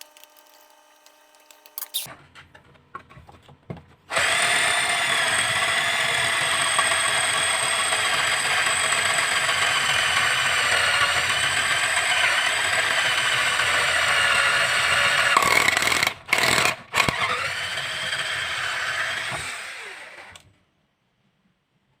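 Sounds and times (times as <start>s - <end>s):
cordless drill motor whining: 4.1s - 20.4s.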